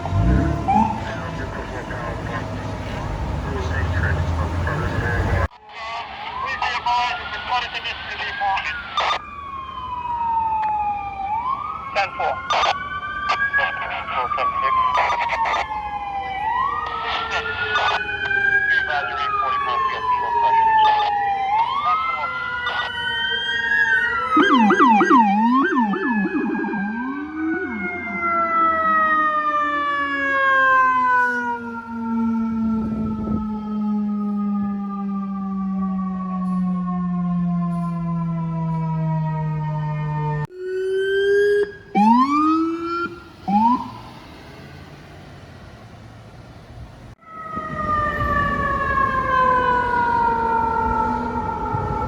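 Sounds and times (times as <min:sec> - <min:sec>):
siren winding down: 0:00.0 - 0:45.5, 0:47.2 - 0:52.0
siren yelping: 0:00.0 - 0:46.2, 0:47.2 - 0:52.0
street noise: 0:00.0 - 0:52.0.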